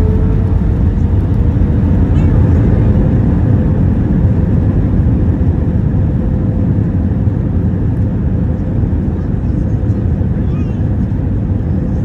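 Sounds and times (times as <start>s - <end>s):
aircraft cabin engine noise: 0.0s - 12.0s.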